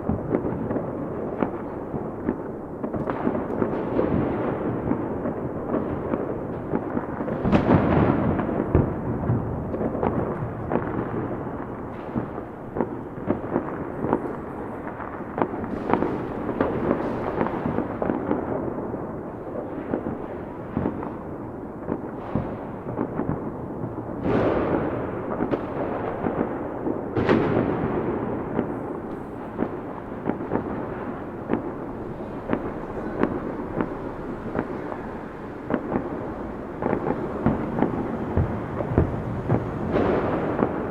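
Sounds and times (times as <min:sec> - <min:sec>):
fireworks crackling: 0:00.0 - 0:40.9
loud firework bangs: 0:00.0 - 0:40.9
low rumble: 0:29.0 - 0:40.6.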